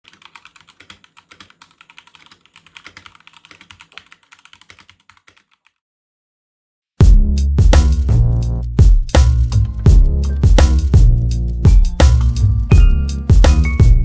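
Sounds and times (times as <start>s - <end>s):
mechanical keyboard typing: 0.0s - 5.8s.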